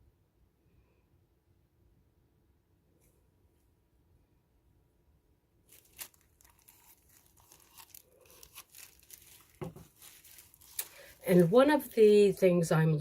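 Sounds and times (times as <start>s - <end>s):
crinkling and rustling: 5.7s - 12.5s.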